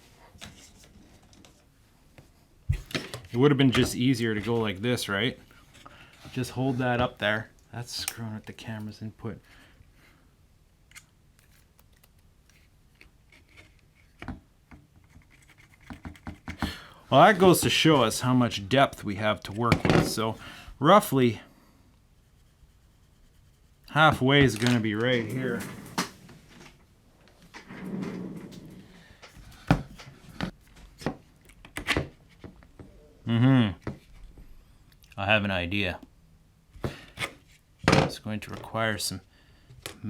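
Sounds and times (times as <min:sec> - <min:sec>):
soft rubbing of tripod parts: 0:00.0 - 0:01.7.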